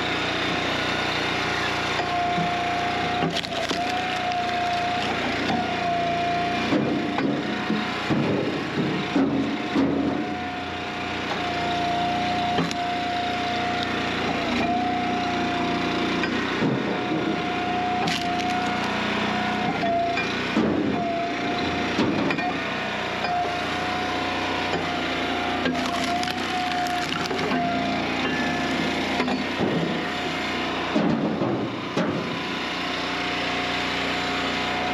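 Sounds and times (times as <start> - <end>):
hydraulic log splitter engine hum: 0.0 - 34.9
logs cracking and splitting: 2.0 - 5.8, 12.0 - 15.2, 16.7 - 19.7, 24.9 - 28.2.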